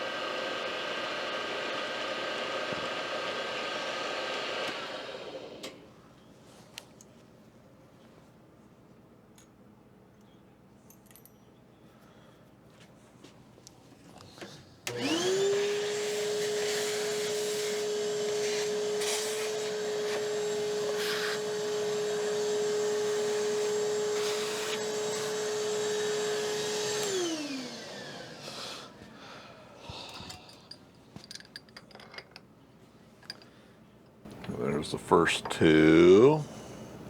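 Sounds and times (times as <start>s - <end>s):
milling spindle motor whine: 14.9s - 28.4s.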